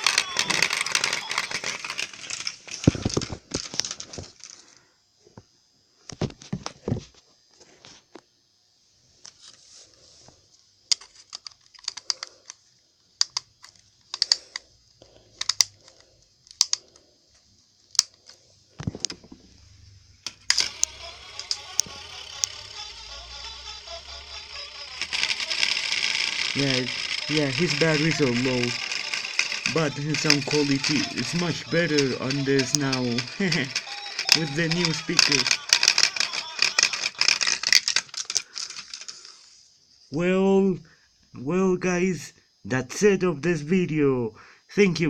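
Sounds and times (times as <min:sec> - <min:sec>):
toy speaker playing music: 0:00.0 - 0:03.3, 0:20.3 - 0:39.0
plastic toy parts clicking: 0:00.0 - 0:04.7, 0:10.9 - 0:12.6, 0:13.2 - 0:14.7, 0:15.3 - 0:17.0, 0:17.8 - 0:19.2, 0:20.2 - 0:39.4.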